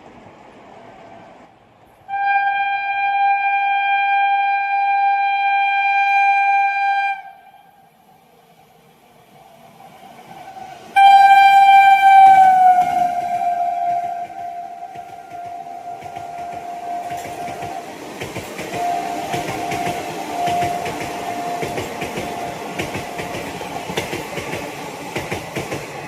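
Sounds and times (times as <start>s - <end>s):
train rumble: 0.0s - 26.0s
locomotive horn blast: 2.1s - 7.9s, 11.0s - 18.0s, 18.8s - 23.2s.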